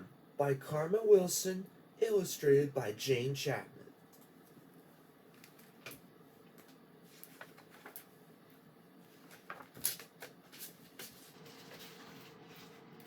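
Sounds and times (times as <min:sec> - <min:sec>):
book pages turning: 0:06.6 - 0:08.1, 0:09.1 - 0:12.9.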